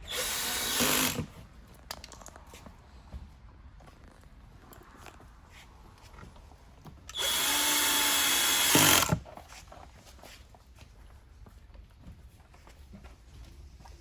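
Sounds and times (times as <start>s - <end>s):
power drill running: 0.0s - 1.3s, 7.1s - 9.2s.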